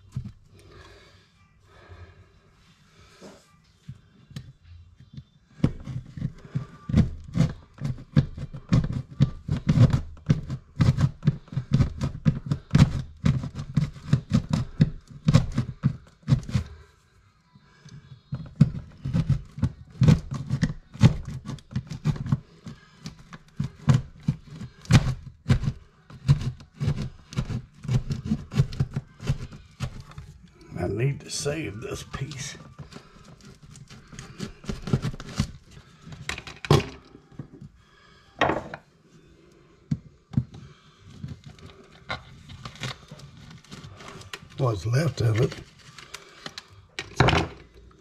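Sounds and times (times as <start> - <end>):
hand saw cutting drywall: 23.5 - 30.1.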